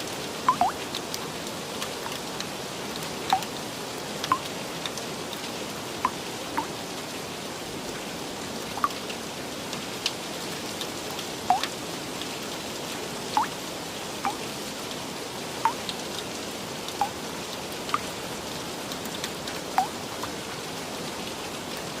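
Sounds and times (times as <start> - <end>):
raindrops plinking: 0.4 - 3.6, 4.2 - 5.4, 6.0 - 6.9, 8.7 - 9.2, 11.1 - 11.9, 13.3 - 14.6, 15.6 - 16.3, 16.9 - 18.2, 18.9 - 20.4.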